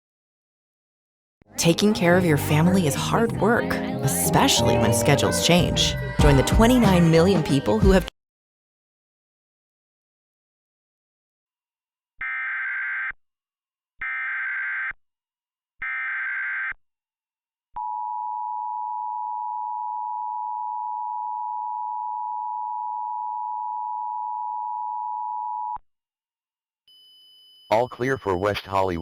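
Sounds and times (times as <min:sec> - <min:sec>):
two-tone attention signal: 0:27.7 - 0:29.0.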